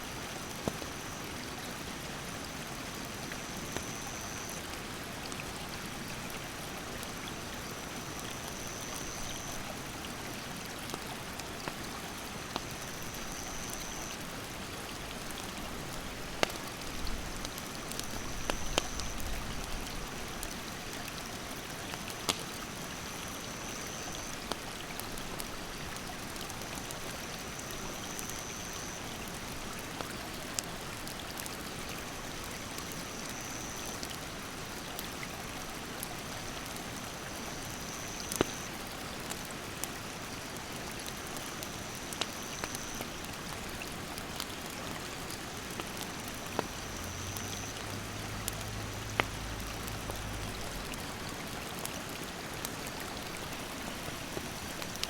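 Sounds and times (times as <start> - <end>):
campfire crackling and popping: 10.7 - 31.8, 32.4 - 55.0
high insect call: 12.8 - 14.2, 37.4 - 38.7, 46.6 - 47.8
stream water rushing: 43.1 - 55.0.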